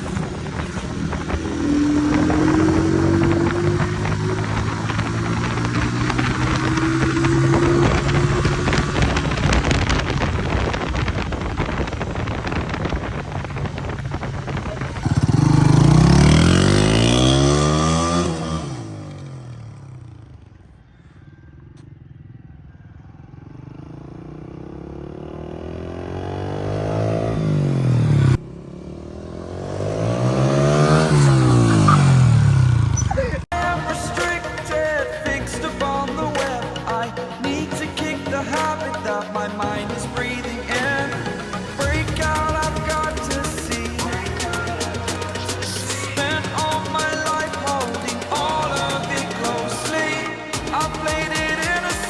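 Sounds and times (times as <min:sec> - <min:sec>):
motorcycle engine passing by: 0:00.0 - 0:33.4.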